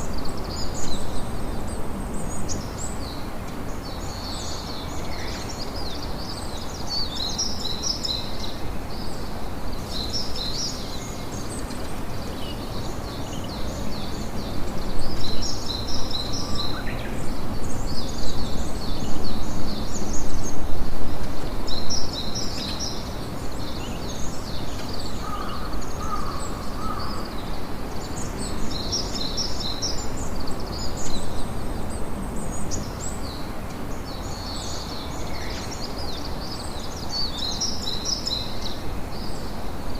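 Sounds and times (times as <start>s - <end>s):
small birds chirping: 21.5s - 39.8s.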